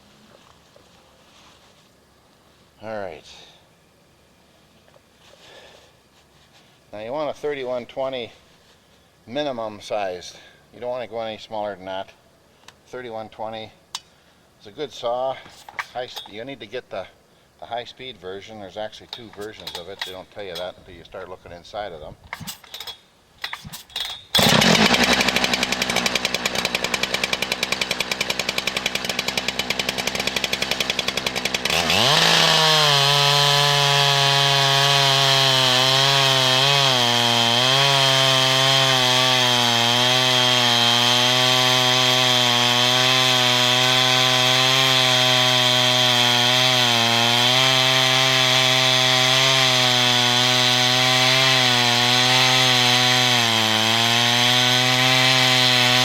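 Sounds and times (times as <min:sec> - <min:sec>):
chainsaw cutting log: 0:19.0 - 0:20.7, 0:22.4 - 0:22.7, 0:23.4 - 0:56.0.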